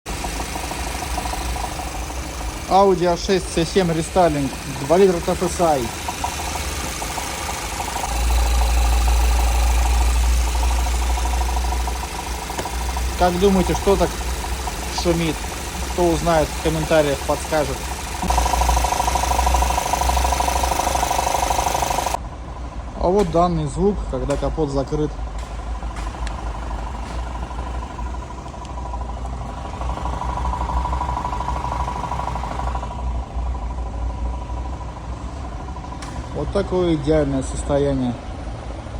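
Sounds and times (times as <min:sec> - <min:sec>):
car engine idling: 0:00.0 - 0:38.9
fast rhythmic ticking: 0:00.1 - 0:22.2.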